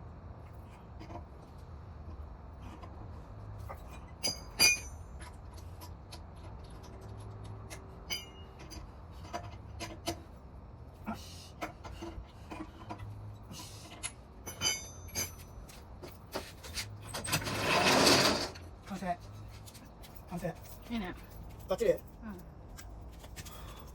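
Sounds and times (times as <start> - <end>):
metallic clinks of tools: 4.2 - 5.0, 8.1 - 8.8, 13.9 - 15.6.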